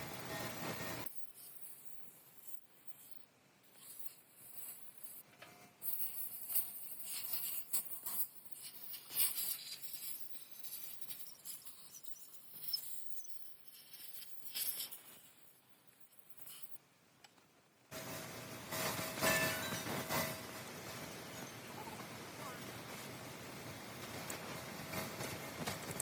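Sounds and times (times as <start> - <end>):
scratching and scraping: 0.0 - 16.8, 24.0 - 26.0.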